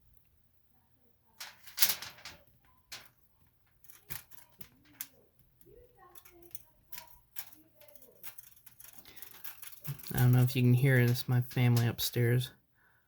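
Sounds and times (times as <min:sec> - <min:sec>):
muffled voices through ceiling: 0:00.7 - 0:12.6
scratching strokes: 0:06.0 - 0:10.5.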